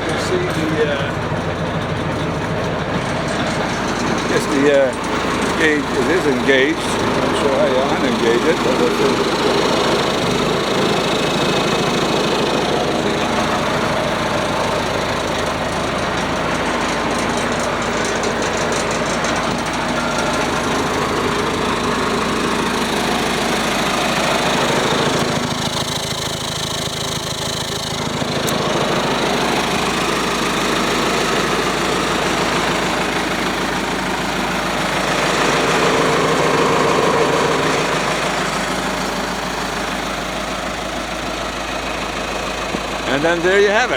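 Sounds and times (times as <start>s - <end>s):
wood chipper diesel engine running: 0.0s - 43.9s.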